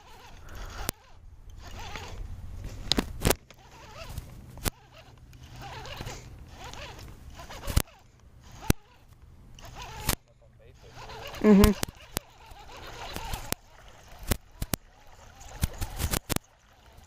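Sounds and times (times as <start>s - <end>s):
sharp reel clicks: 0.0s - 2.2s, 2.9s - 17.0s
fishing reel cranking: 0.0s - 2.3s, 3.5s - 17.0s.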